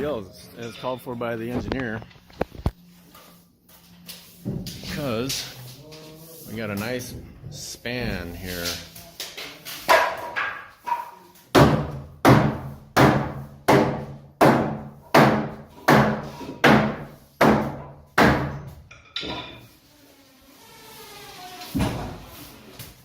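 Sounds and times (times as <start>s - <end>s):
hammer striking wood: 9.9s - 18.7s.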